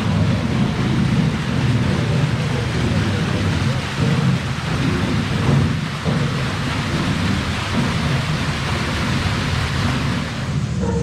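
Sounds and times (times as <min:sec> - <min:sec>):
water mill rumbling: 0:00.0 - 0:11.0.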